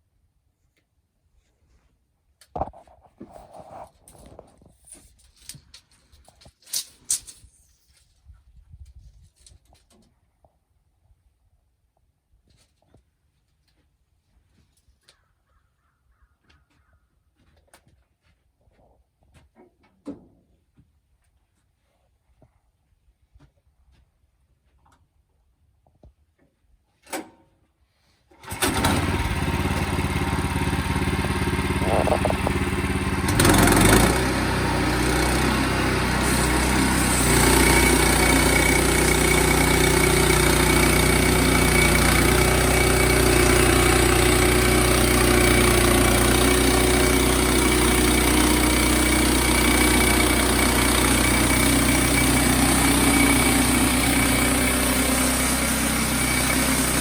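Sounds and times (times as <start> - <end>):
sawmill engine running: 28.4 - 57.0.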